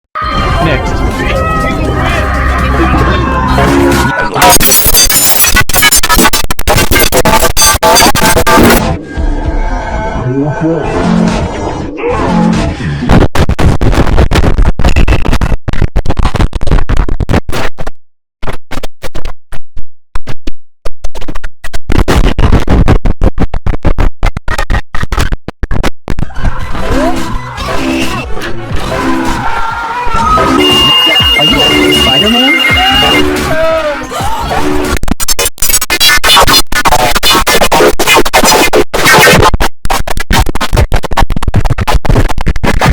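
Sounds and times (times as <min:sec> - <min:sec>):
distorted stuttering electronic audio: 0:00.2 - 0:09.0, 0:12.2 - 0:42.9
distorted stuttering computer chime: 0:04.4 - 0:08.8, 0:30.4 - 0:33.6.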